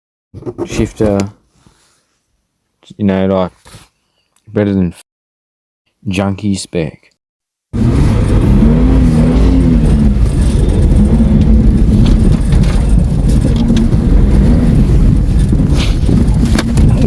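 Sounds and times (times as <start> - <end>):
car engine revving: 7.8 - 17.0.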